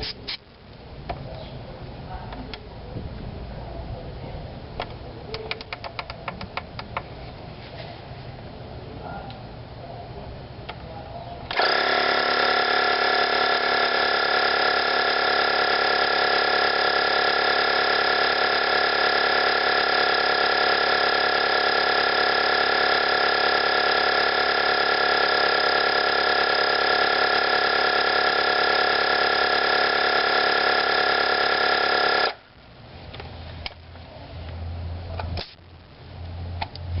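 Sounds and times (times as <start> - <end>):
air compressor whining: 11.4 - 32.5.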